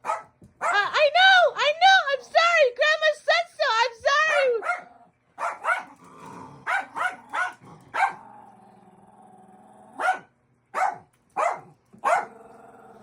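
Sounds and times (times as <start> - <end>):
dog barking: 0.0 - 0.9, 4.3 - 6.0, 6.6 - 8.2, 10.0 - 12.4
dog grumbling low: 6.0 - 6.7, 7.6 - 10.0, 12.3 - 13.0.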